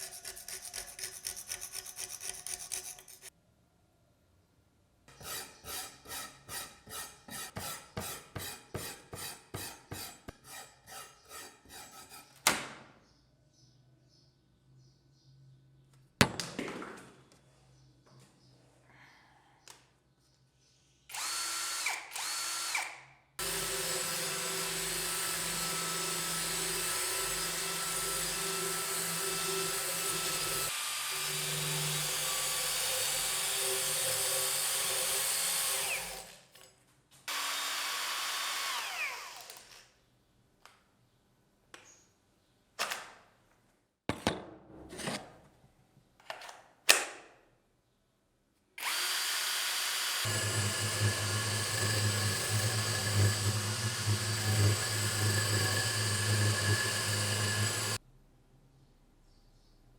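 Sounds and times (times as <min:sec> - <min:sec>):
electric drill running in bursts: 0:21.1 - 0:36.4, 0:37.3 - 0:39.8, 0:48.8 - 0:58.0.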